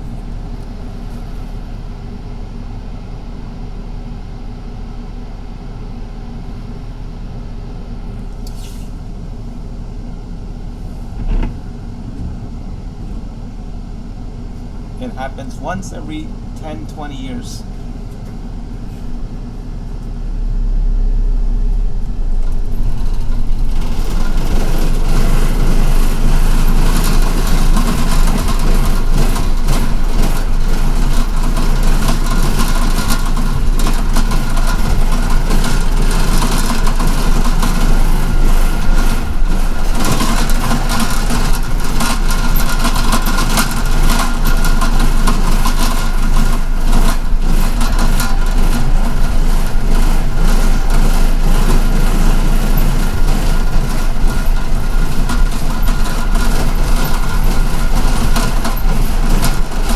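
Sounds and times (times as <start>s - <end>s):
bus engine and road noise: 0.0s - 59.9s
short clicks and rattles: 22.5s - 59.9s.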